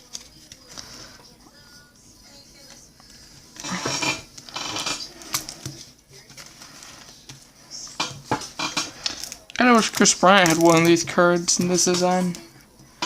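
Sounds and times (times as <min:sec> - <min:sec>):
cards rustling and sliding: 0:08.8 - 0:12.4.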